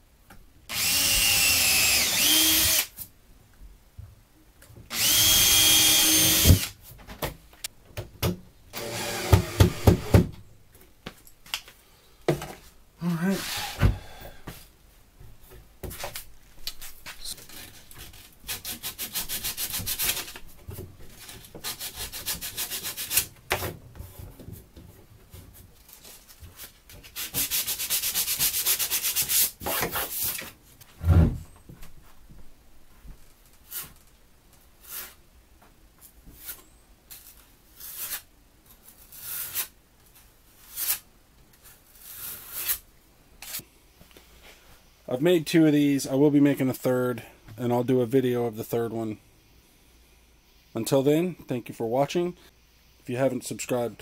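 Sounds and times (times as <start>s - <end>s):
sandpaper rubbing on wood: 18.5s - 20.4s, 21.6s - 23.3s, 27.1s - 30.4s.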